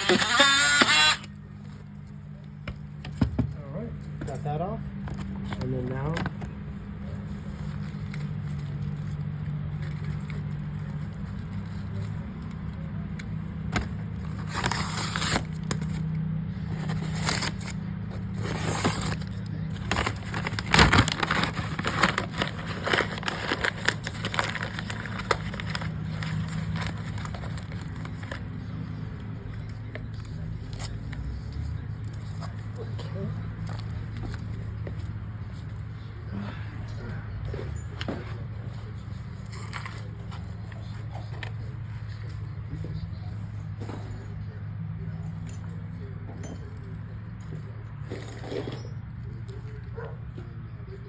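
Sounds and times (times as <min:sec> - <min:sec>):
parts scraping and rattling: 0:00.0 - 0:01.4, 0:07.2 - 0:35.8.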